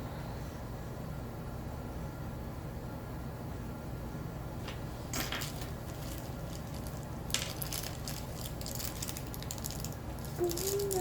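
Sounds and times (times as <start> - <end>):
plastic packaging crinkling: 5.3 - 11.0.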